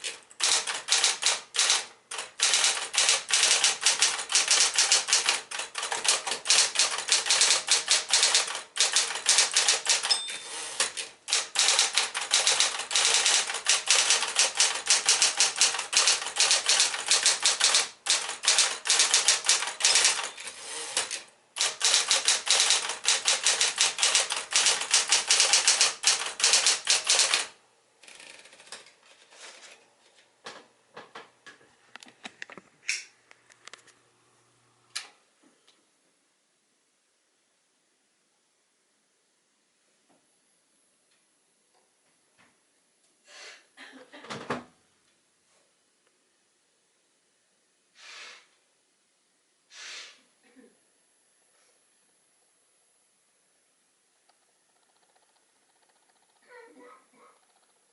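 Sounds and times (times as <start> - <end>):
electric typewriter typing: 0.0 - 28.9.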